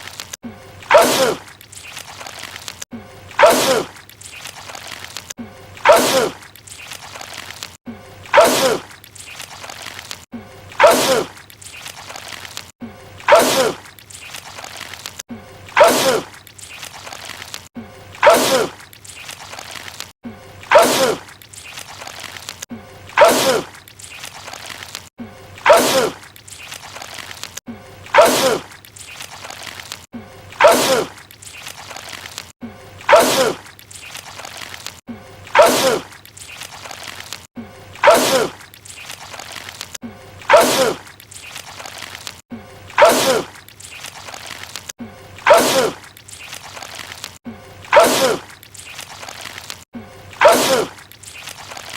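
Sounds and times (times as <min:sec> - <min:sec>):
man sneezing loudly: 0:47.9 - 0:48.4, 0:50.4 - 0:51.0.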